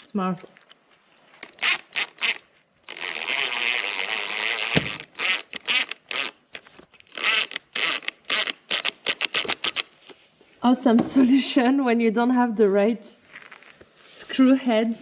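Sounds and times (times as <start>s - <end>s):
power drill whining: 1.4s - 10.1s.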